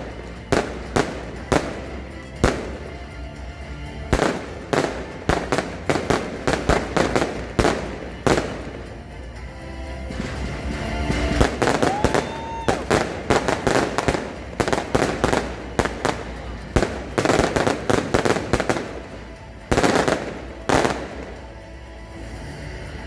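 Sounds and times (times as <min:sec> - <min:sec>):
fireworks bangs and crackles: 0:00.0 - 0:22.9
firework rising whistle: 0:11.6 - 0:13.0.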